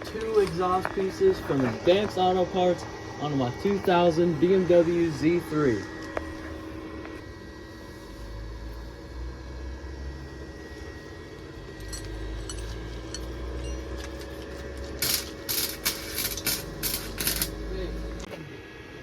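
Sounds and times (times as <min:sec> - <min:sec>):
steady low hum: 0:00.0 - 0:19.0
welding arc crackle: 0:10.6 - 0:18.3.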